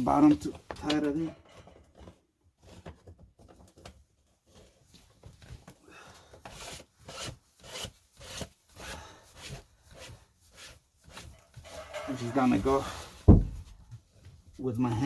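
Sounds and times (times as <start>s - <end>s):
plastic pipe fitting scraping: 9.5s - 13.0s.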